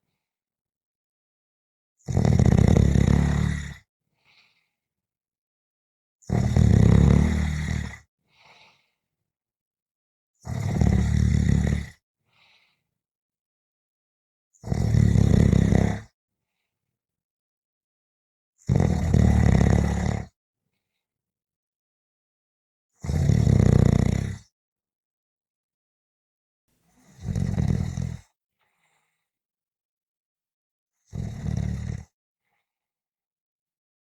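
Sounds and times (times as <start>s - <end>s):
person snoring: 2.1s - 3.8s, 6.3s - 8.0s, 10.4s - 12.0s, 14.6s - 16.1s, 18.7s - 20.3s, 23.0s - 24.5s, 27.0s - 28.2s, 31.1s - 32.1s.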